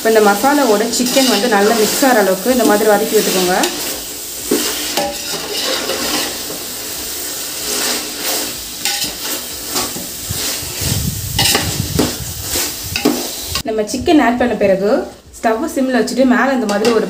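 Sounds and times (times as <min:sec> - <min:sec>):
chicken sizzling in a pot: 0:00.0 - 0:13.7
ladle scraping a pot: 0:00.6 - 0:13.6.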